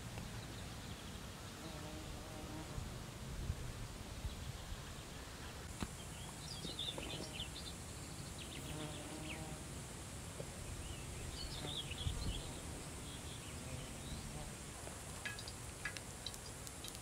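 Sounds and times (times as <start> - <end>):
small birds chirping: 4.2 - 9.6, 10.4 - 17.0.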